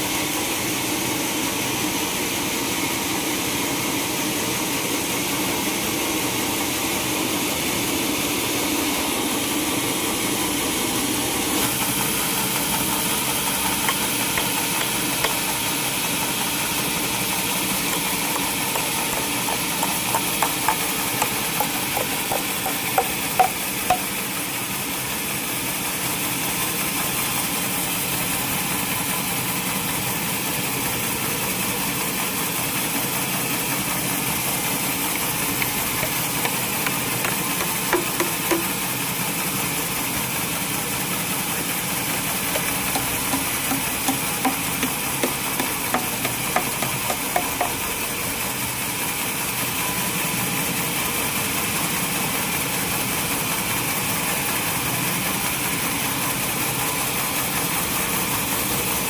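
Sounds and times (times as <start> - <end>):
sawmill machinery drone: 0.0 - 59.0
short sharp knocks: 35.2 - 38.8.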